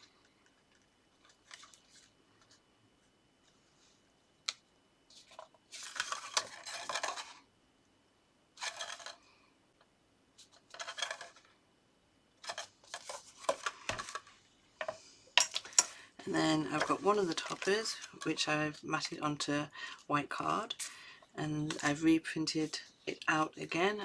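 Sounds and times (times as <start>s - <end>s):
paper and card rustling: 1.2s - 2.6s, 5.1s - 7.4s, 12.4s - 14.3s, 15.6s - 19.2s.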